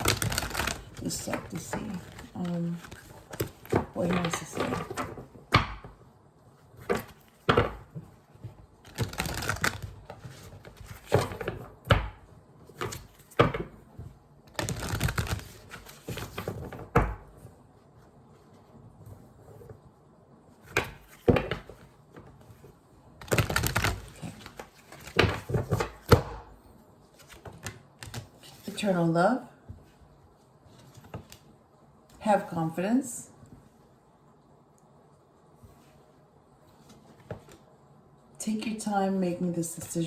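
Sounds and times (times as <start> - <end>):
cards shuffling: 0.0 - 5.0, 8.8 - 11.6, 14.5 - 16.8, 23.2 - 26.2.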